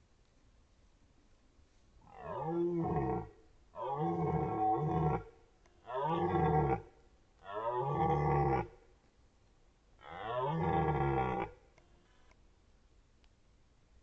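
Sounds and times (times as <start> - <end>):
deer stag roaring: 2.1 - 8.7, 10.0 - 11.6.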